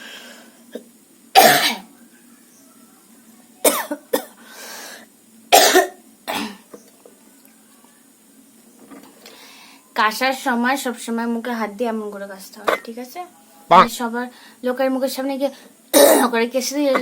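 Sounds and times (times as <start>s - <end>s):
woman coughing: 1.4s - 1.9s, 3.6s - 4.4s, 5.5s - 6.7s, 12.6s - 12.9s, 15.9s - 16.4s.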